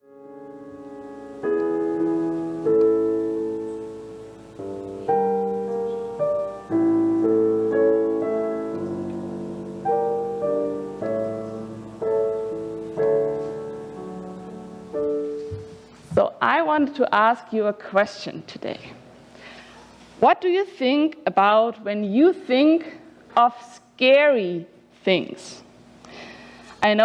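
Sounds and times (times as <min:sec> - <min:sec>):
piano playing slow chords: 0:00.0 - 0:16.1.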